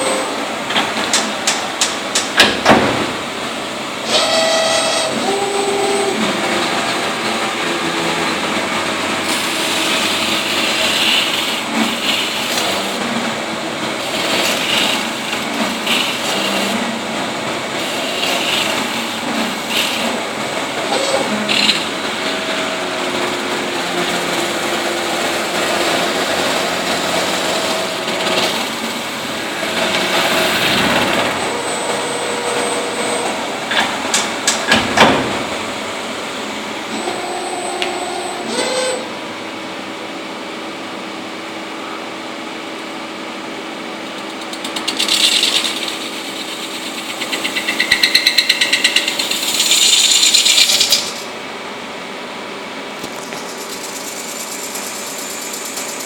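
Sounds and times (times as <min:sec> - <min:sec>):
metal-spinning machine humming: 0:03.6 - 0:34.5, 0:43.8 - 0:51.4, 0:53.0 - 0:56.0.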